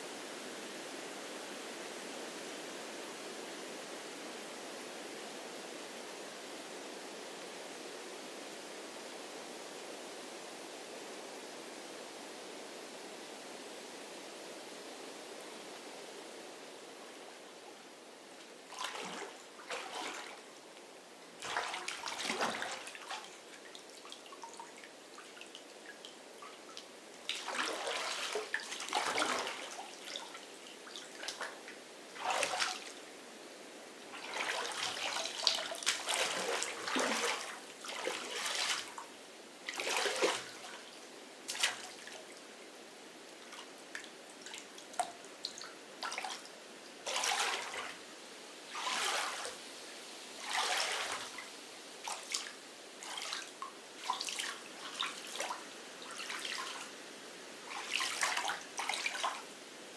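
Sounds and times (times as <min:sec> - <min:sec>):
water drips: 0:18.4 - 0:31.6, 0:34.2 - 0:39.1, 0:43.3 - 0:46.5
water splashing and trickling: 0:18.6 - 0:33.3, 0:34.1 - 0:42.4, 0:43.3 - 0:49.8, 0:50.4 - 0:57.0, 0:57.6 - 0:59.6.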